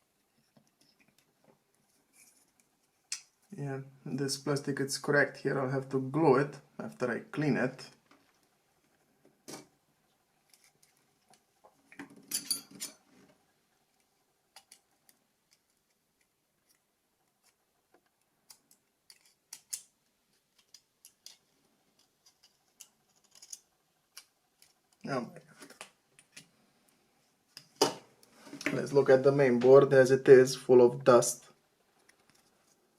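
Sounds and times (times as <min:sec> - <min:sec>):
plastic parts clicking and tapping: 0:17.4 - 0:26.5.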